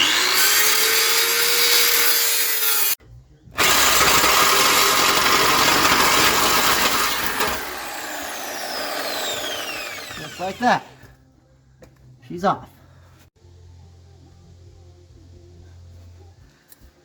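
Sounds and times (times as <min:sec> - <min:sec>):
cut-off wheel cutting steel pipe: 0:00.0 - 0:03.0, 0:03.6 - 0:11.0.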